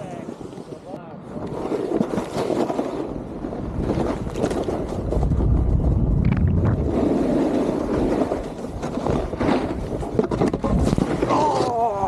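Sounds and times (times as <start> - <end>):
wind buffeting microphone: 0.0 - 11.8
snowboard scraping over snow: 0.0 - 12.0.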